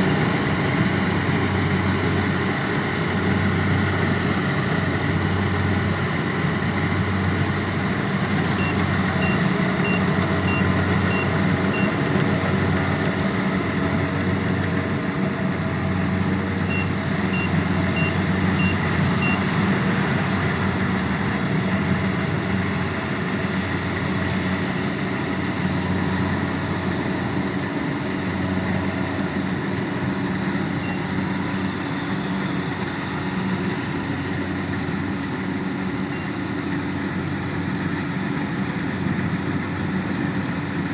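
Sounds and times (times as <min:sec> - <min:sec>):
harvester engine running: 0:00.0 - 0:40.9
high warning beeps: 0:08.4 - 0:12.2, 0:16.7 - 0:19.6, 0:30.8 - 0:31.1.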